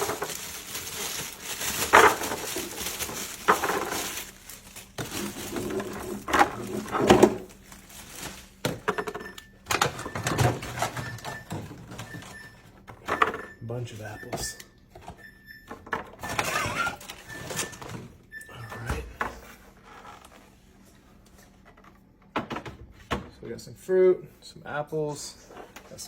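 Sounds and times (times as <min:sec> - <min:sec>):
apples knocking in a plastic bin: 0:00.0 - 0:11.8.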